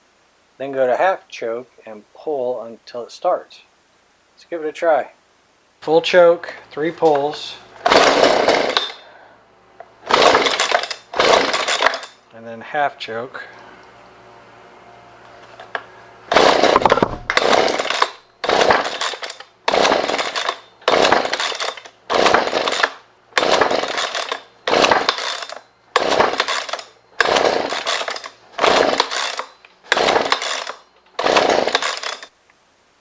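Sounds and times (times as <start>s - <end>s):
recoil starter pulls cranking engine: 7.1s - 9.1s, 10.0s - 12.2s, 15.6s - 32.3s.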